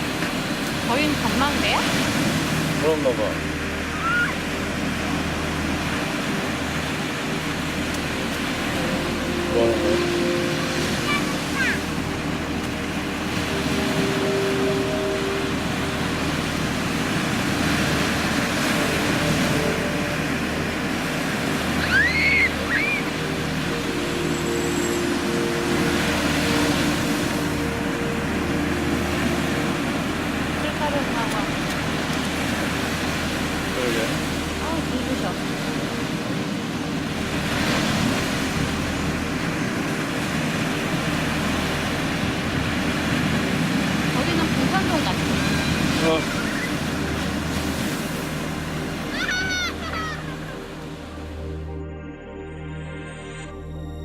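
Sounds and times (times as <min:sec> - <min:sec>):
sea surf rushing: 0:00.0 - 0:51.7.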